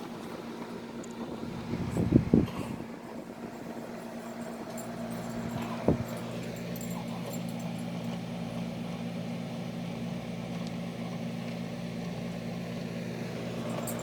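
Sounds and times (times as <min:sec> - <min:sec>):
air conditioner compressor hum: 0:00.0 - 0:14.0
air conditioner fan rush: 0:00.0 - 0:14.0.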